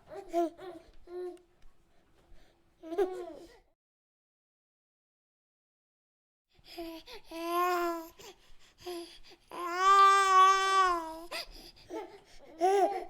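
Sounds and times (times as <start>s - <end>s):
baby babbling: 6.8s - 8.2s, 9.5s - 13.0s
baby wailing cry: 7.3s - 8.2s, 9.5s - 13.0s.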